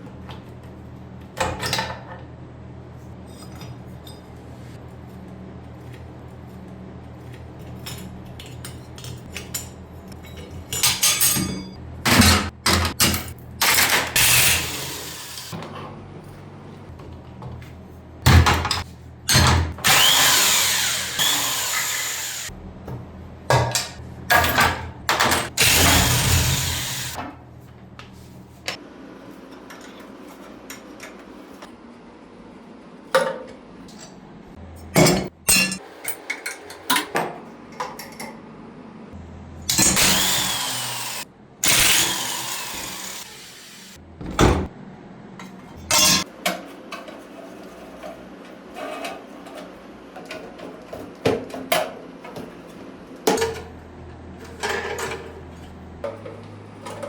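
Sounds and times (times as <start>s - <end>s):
metal tools clanking: 7.7s - 14.4s, 45.8s - 46.3s.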